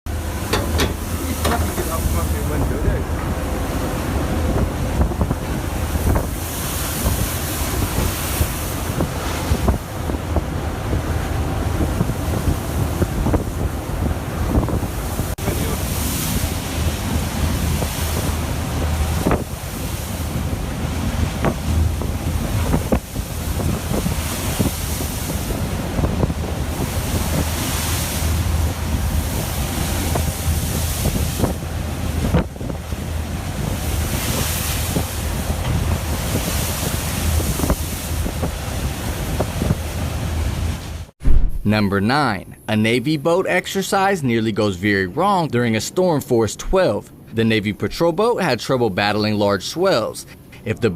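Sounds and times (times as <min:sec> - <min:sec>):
strong wind on microphone: 0:00.1 - 0:41.7
waves surging and breaking: 0:00.1 - 0:50.9
sharp knocks: 0:00.5 - 0:01.7.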